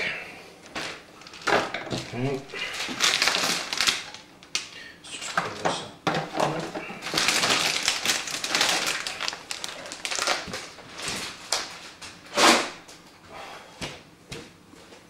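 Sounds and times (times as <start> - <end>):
cables and plastic parts rustling: 0.6 - 13.1.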